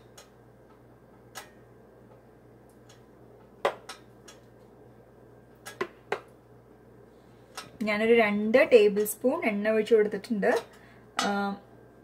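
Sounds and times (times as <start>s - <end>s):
faint steady hum: 0.0s - 12.0s
kitchenware clicks and taps: 5.6s - 6.3s.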